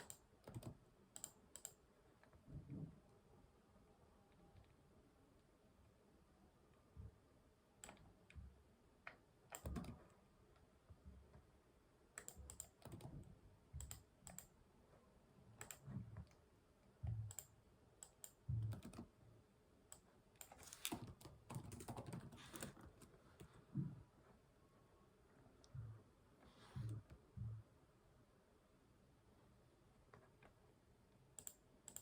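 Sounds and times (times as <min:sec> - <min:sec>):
typing on computer keyboard: 0:00.0 - 0:01.8, 0:09.1 - 0:10.0, 0:12.2 - 0:13.2, 0:13.8 - 0:14.5, 0:15.6 - 0:15.9, 0:17.2 - 0:19.1, 0:19.9 - 0:23.5, 0:31.4 - 0:32.0.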